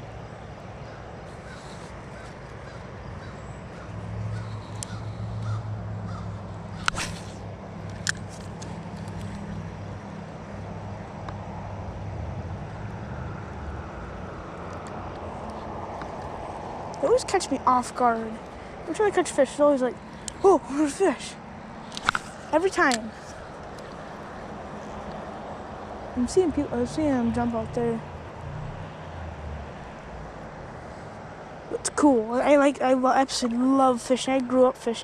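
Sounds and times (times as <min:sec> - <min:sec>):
crow cawing: 0:00.8 - 0:06.9.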